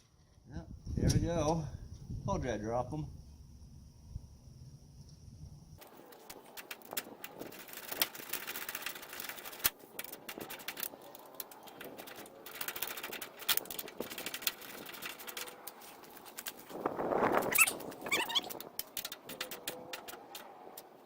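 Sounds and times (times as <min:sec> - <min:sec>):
metallic clicks and scrapes: 0:05.8 - 0:21.0.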